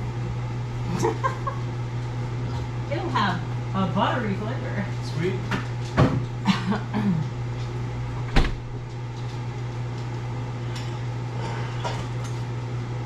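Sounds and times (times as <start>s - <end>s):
kitchen appliance humming: 0.0s - 13.0s.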